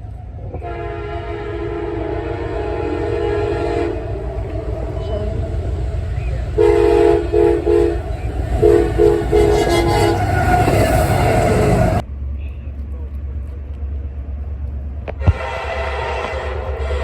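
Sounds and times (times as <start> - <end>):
low train rumble: 0.0 - 17.0
locomotive air horn blasts: 0.6 - 12.0, 15.2 - 17.0.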